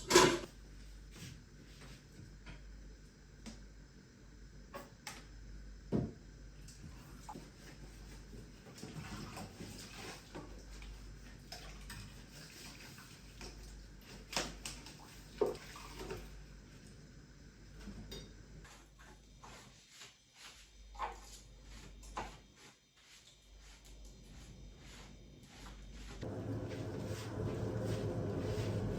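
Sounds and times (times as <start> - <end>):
dishes clinking and knocking: 0.0 - 0.5.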